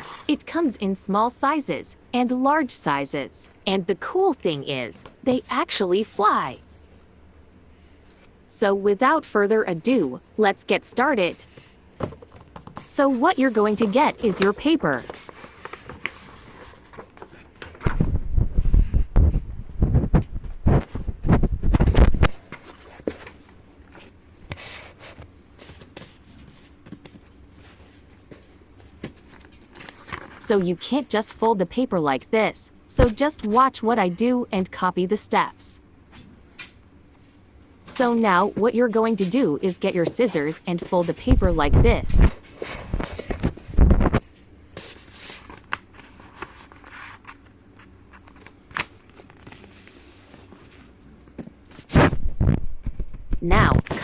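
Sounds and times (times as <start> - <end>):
paper rustling: 13.1 - 18.9, 21.7 - 30.4, 44.7 - 51.0.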